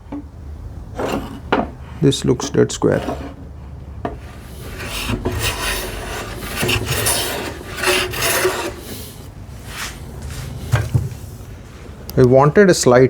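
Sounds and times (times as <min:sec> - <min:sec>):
hand plane shaving wood: 0:01.0 - 0:03.4, 0:04.1 - 0:10.0.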